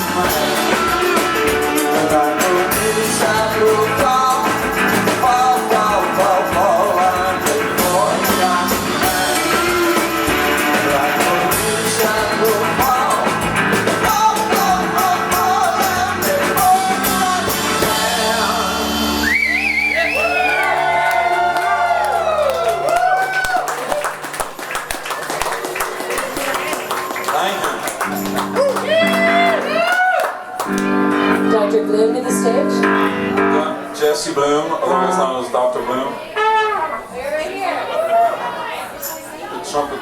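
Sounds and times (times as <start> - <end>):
live rock band playing: 0.0 - 21.0, 26.5 - 34.0
crowd cheering: 17.7 - 31.2, 36.3 - 39.0.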